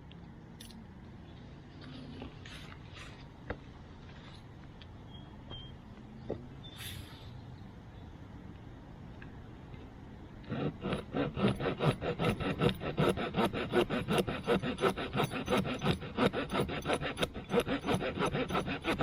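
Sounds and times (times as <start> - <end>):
small saw cutting through a stick: 10.5 - 19.0.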